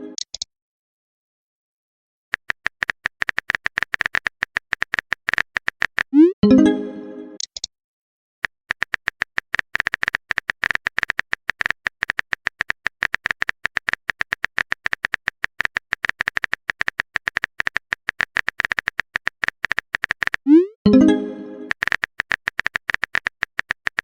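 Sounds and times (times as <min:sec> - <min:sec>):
phone keyboard typing clicks: 0:02.3 - 0:06.3, 0:08.4 - 0:20.6, 0:21.7 - 0:24.0.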